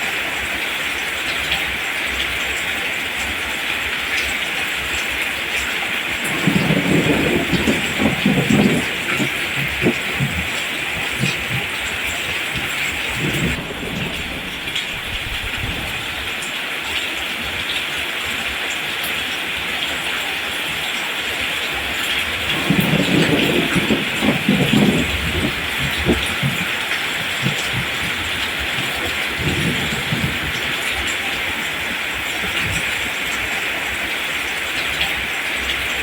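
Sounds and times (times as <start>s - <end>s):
steady rain hiss: 0.0s - 36.0s
low rumble: 6.3s - 16.5s.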